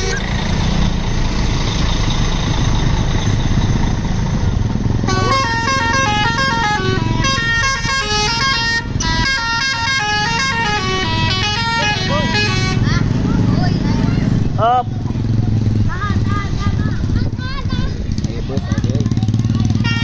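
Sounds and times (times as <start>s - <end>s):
engine and road rumble: 0.0s - 20.0s
musical bus horn melody: 5.0s - 13.0s, 19.8s - 20.0s.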